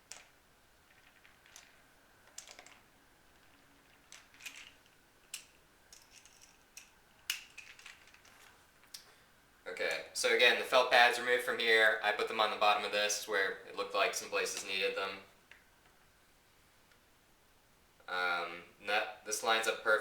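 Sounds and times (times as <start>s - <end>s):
hardware rustling: 0.9s - 8.9s
small metal parts clicking: 3.4s - 9.0s.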